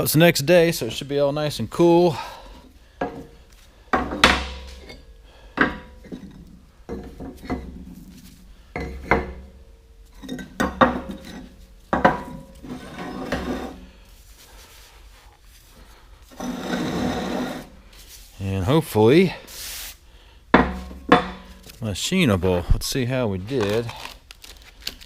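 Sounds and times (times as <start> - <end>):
metal clanks and knocks: 3.0 - 13.8, 20.5 - 21.8.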